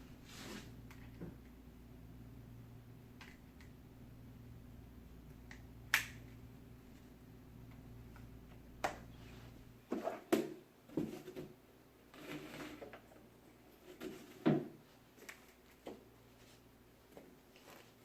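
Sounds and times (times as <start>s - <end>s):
soft rustle: 14.9s - 18.0s.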